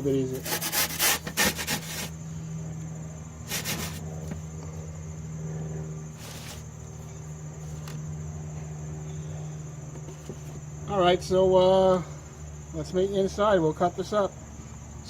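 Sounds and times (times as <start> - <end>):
metal sheet scraping on stone: 0.3 - 2.2, 3.5 - 4.0.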